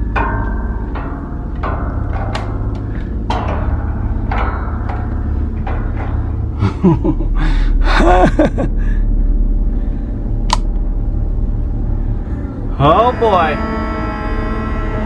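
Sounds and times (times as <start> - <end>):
knocks and creaks of climbing: 0.0 - 7.8
steady low rumble: 0.0 - 15.0
squeaky wavering sounds: 12.2 - 15.0.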